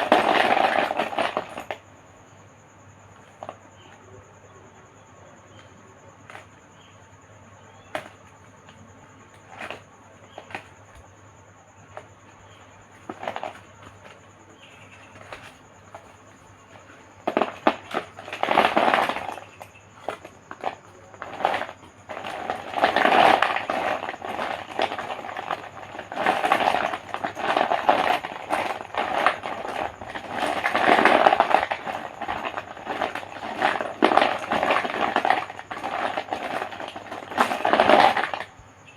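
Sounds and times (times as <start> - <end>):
chalk being crushed: 17.3 - 38.5.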